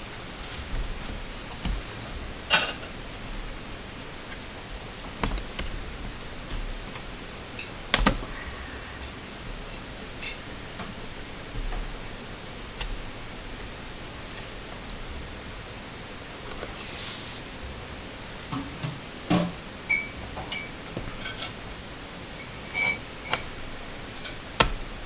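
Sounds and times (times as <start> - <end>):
faint high whine: 0.0 - 18.4, 19.8 - 21.6
steady hiss: 0.0 - 19.9.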